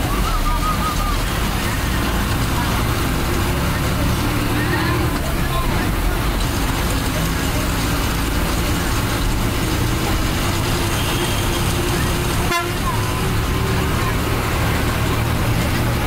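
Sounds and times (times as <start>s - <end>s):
bus engine drone: 0.0s - 16.0s
road noise: 0.0s - 16.0s
vehicle horn: 10.8s - 13.2s.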